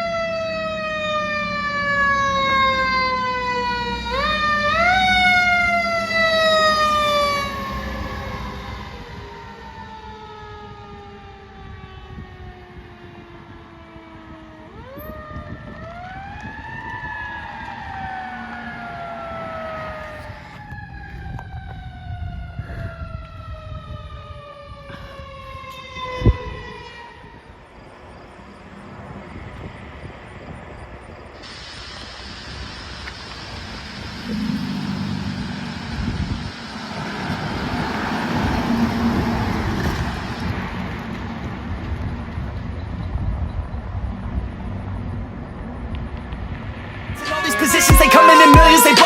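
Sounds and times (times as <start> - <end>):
fire engine sirens wailing: 0.0 - 28.4, 33.2 - 41.7, 47.1 - 49.0
engine and traffic noise: 0.0 - 49.0.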